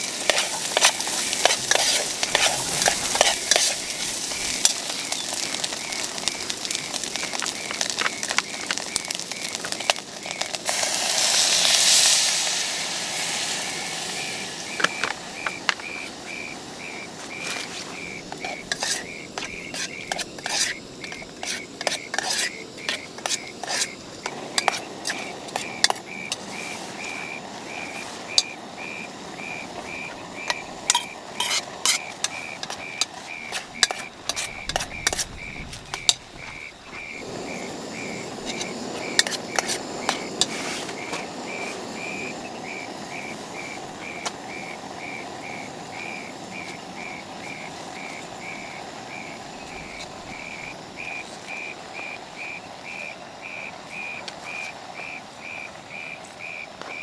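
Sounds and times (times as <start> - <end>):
metal utensils clinking and scraping: 0.0 - 9.0, 17.4 - 27.2, 30.4 - 36.8, 38.4 - 41.2.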